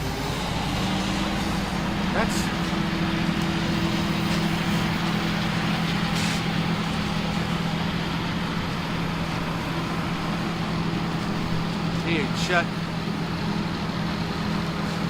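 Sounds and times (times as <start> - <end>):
combine harvester running: 0.0 - 15.0.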